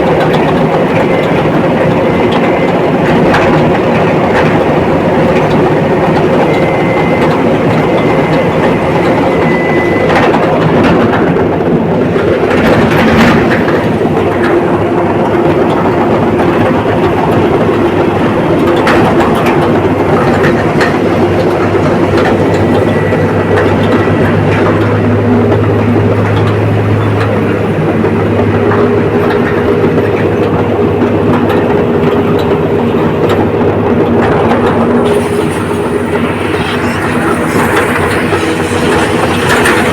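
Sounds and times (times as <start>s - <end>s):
bulldozer diesel engine: 0.0s - 39.9s
steel tracks clattering: 0.0s - 39.9s.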